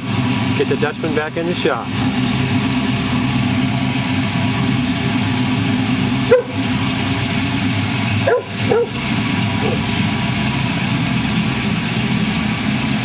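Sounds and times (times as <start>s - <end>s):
car engine idling: 0.0s - 13.0s
dog bark: 6.3s - 6.6s, 8.2s - 9.0s.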